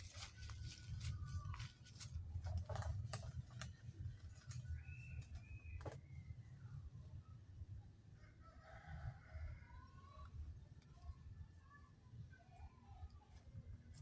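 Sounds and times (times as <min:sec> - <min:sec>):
faint whistled bird calls: 0:04.6 - 0:06.6.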